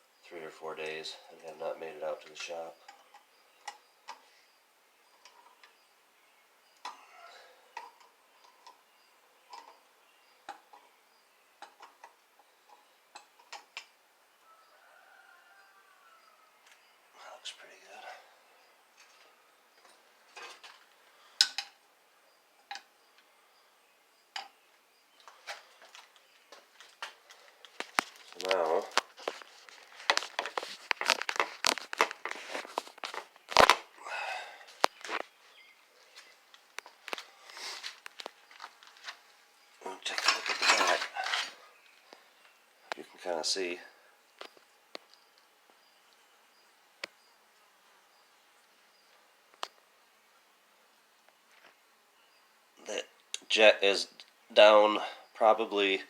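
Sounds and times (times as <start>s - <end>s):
crinkly rustling: 25.3s - 33.8s.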